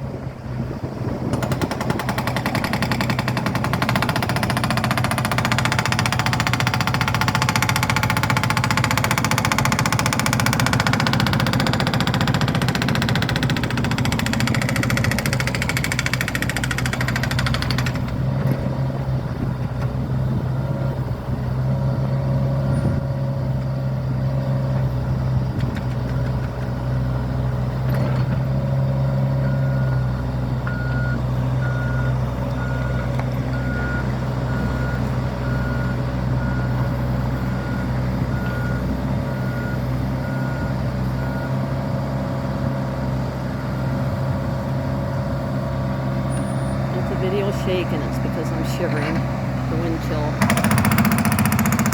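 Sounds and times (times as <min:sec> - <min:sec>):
heavy machinery engine droning: 0:00.0 - 0:51.9
reversing alarm beeps: 0:29.4 - 0:41.6.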